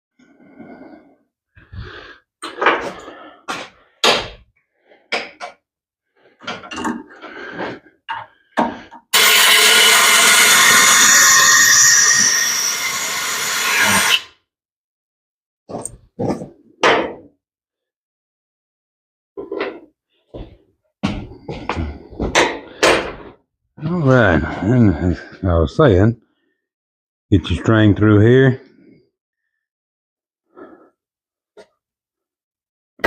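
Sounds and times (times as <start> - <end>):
power tool running: 9.2 - 14.3.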